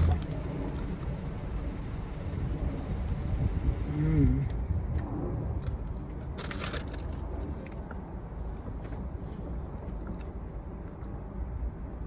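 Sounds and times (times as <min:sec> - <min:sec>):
low rumble in car cabin: 0:00.0 - 0:12.0.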